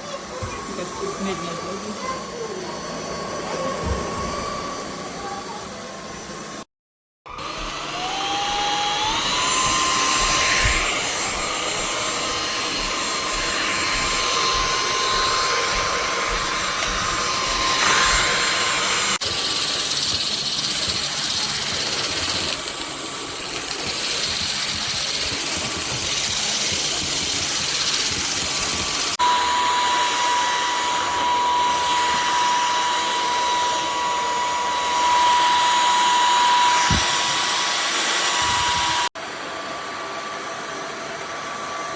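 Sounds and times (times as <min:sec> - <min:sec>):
vacuum motor whine: 0:00.0 - 0:06.6, 0:07.3 - 0:41.9.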